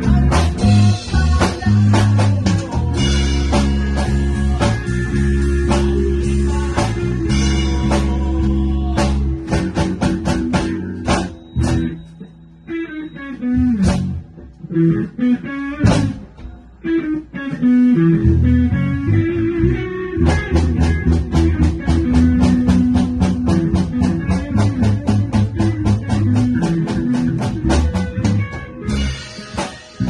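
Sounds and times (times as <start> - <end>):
bass guitar: 0.0 - 30.0
drum kit: 0.0 - 30.0
electric guitar: 0.0 - 30.0.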